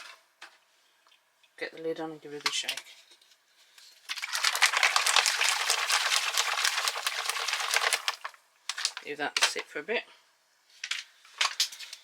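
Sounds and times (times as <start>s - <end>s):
water sloshing in shaken bottle: 4.2s - 8.4s.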